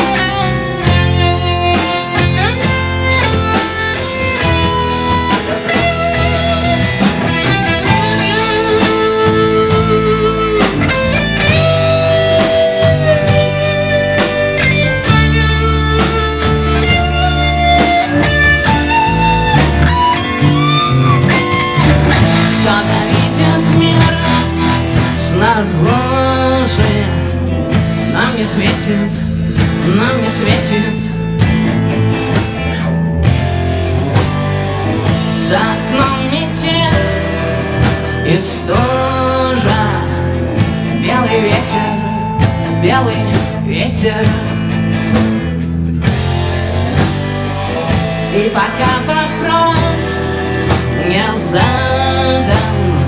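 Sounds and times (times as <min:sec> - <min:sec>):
bass and drums: 0:00.0 - 0:53.0
guitar with bending notes: 0:00.0 - 0:53.0
rock band playing: 0:00.0 - 0:53.0.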